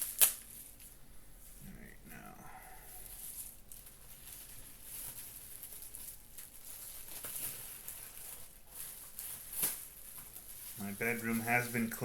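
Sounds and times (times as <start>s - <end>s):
packaging rustling and crinkling: 0.0s - 1.6s, 2.8s - 12.0s.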